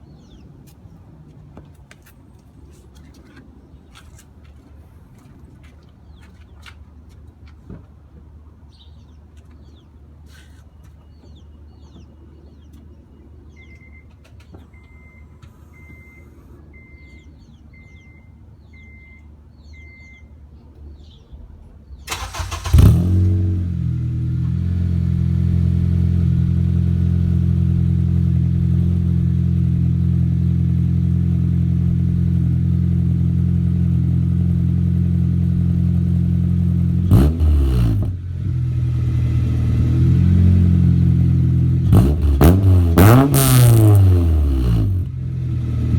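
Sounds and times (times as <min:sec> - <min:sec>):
faint beep: 0:13.6 - 0:20.4
car engine starting and idling: 0:20.8 - 0:45.9.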